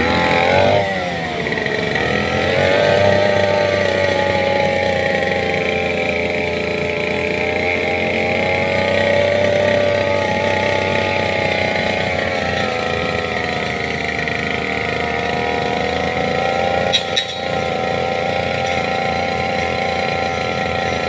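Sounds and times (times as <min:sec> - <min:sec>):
engine running: 0:00.0 - 0:21.0.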